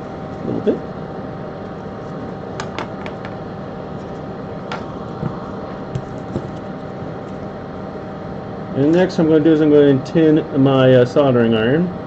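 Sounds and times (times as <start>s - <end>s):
fume extractor fan humming: 0.0s - 12.0s.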